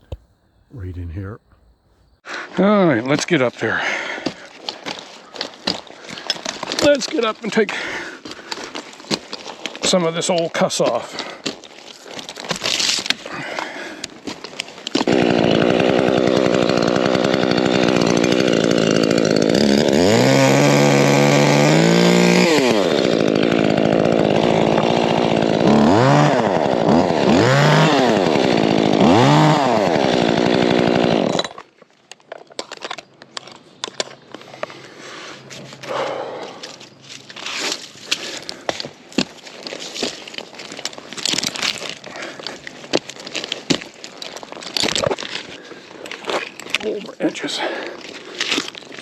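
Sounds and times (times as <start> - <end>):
chainsaw running and revving: 15.0 - 31.6.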